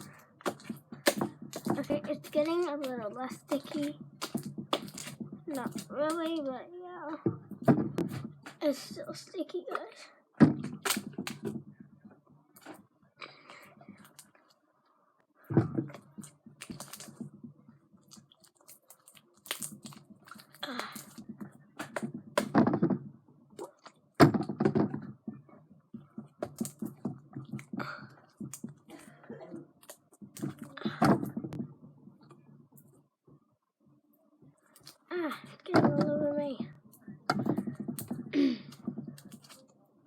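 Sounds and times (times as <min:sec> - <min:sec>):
hands kneading sticky slime: 0:00.0 - 0:06.8, 0:09.7 - 0:11.8, 0:15.6 - 0:33.0, 0:34.6 - 0:39.8.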